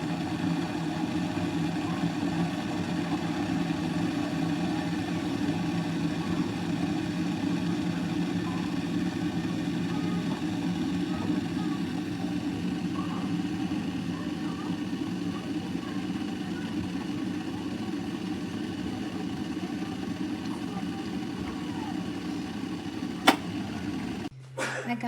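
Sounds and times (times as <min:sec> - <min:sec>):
kettle boiling rumble: 0:00.0 - 0:24.3
kettle switch click: 0:23.2 - 0:23.6.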